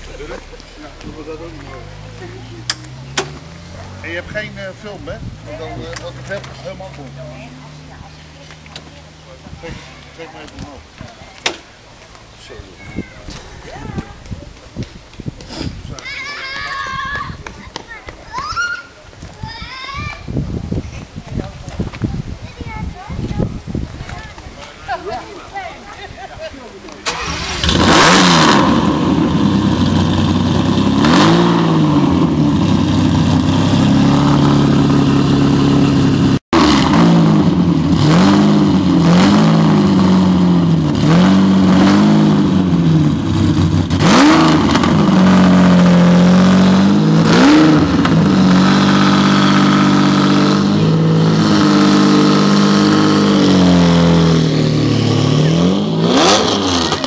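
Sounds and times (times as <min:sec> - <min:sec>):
car engine idling and revving: 0:00.0 - 0:11.0, 0:27.0 - 0:57.0.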